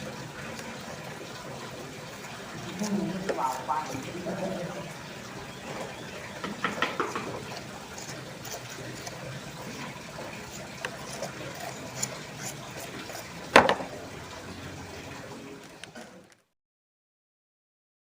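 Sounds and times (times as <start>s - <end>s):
scraping wet mortar: 2.2s - 14.0s.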